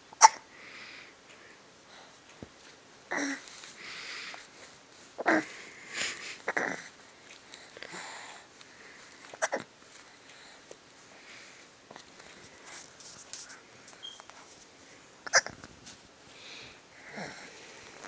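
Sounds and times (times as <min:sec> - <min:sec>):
dog hiccuping: 0:00.2 - 0:00.4, 0:15.2 - 0:15.5.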